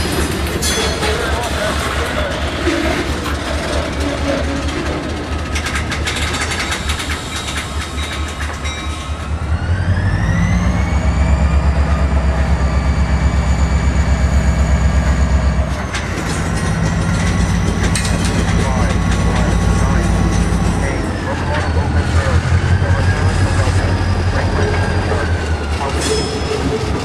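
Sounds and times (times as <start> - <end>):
diesel locomotive engine: 0.0 - 27.0
rising whine: 9.1 - 25.4.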